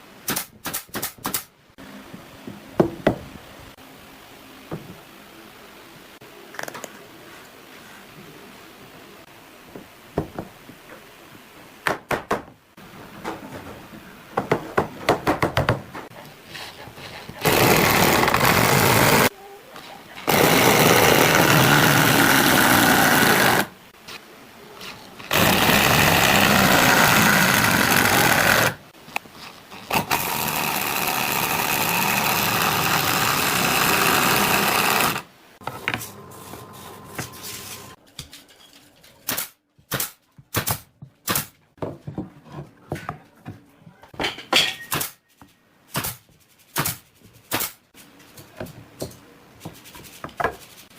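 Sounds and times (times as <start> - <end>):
chainsaw cutting into log: 17.4 - 19.3, 20.2 - 23.7, 25.3 - 28.8, 29.8 - 35.3.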